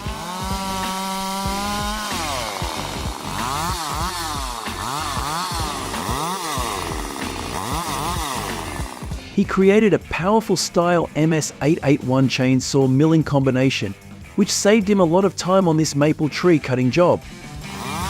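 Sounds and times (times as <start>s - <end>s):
chainsaw cutting wood: 0.0s - 9.3s, 17.5s - 18.0s.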